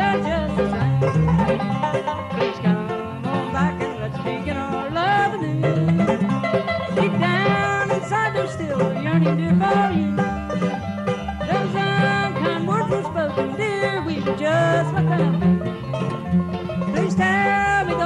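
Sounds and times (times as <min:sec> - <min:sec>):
banjo: 0:00.0 - 0:18.0
bass: 0:00.0 - 0:18.0
guitar: 0:00.0 - 0:18.0
mandolin: 0:00.0 - 0:18.0.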